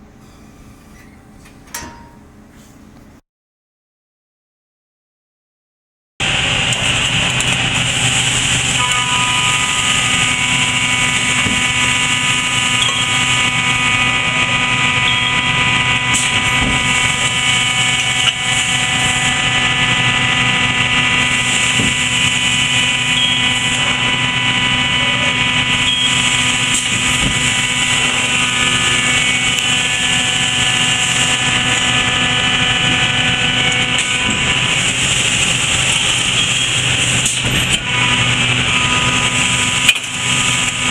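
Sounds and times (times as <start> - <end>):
machine hum with high whine: 0.0 - 3.2, 6.2 - 40.9.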